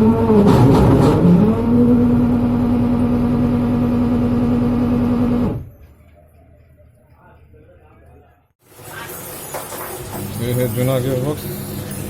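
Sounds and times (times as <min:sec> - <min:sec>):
washing machine motor humming: 0:00.0 - 0:05.7.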